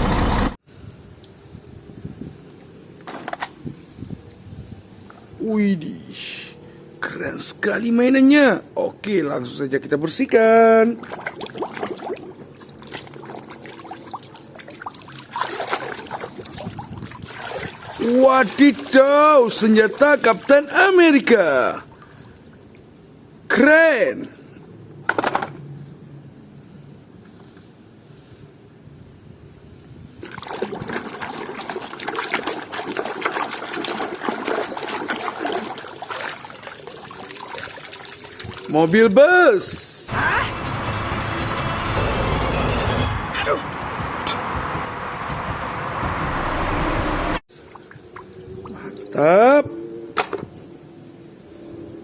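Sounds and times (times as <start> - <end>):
water trickling and splashing: 10.6 - 23.2, 30.2 - 39.2, 47.5 - 49.2.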